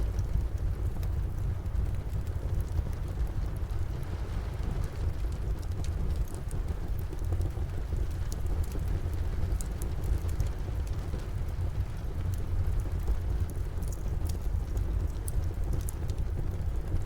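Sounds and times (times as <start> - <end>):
fireplace fire crackling: 0.0 - 17.0
steady rain: 0.0 - 17.0.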